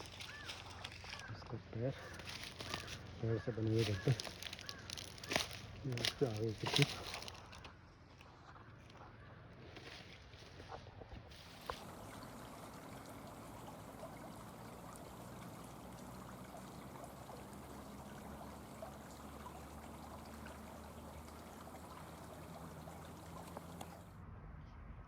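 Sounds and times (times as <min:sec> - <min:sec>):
stream water trickling: 0:02.0 - 0:07.6, 0:11.4 - 0:24.2.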